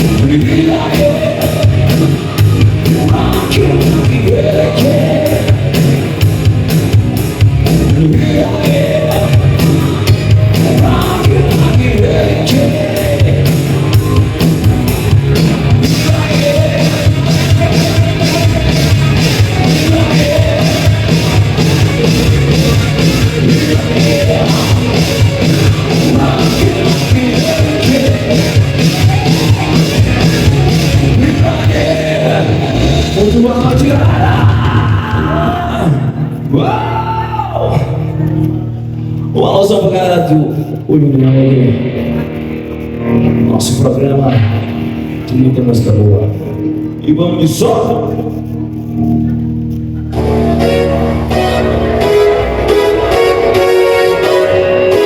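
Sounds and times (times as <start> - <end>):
cymbals keeping fast beat: 0.0 - 34.6
live rock band playing: 0.0 - 37.0, 41.0 - 47.0, 47.7 - 55.0.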